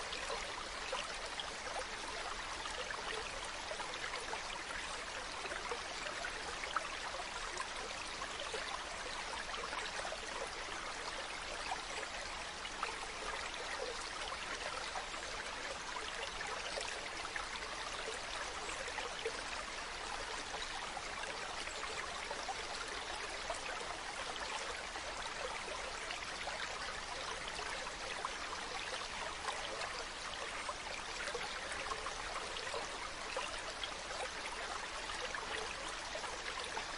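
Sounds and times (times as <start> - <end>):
stream flowing over rocks: 0.0 - 36.9.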